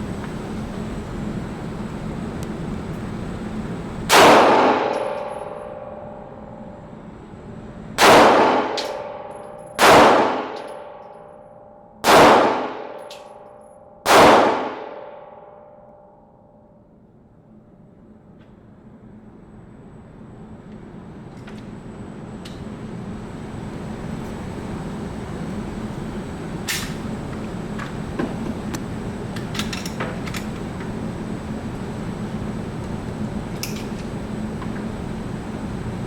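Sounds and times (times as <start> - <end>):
gunshots with ringing tail: 4.1 - 6.6, 8.0 - 15.8.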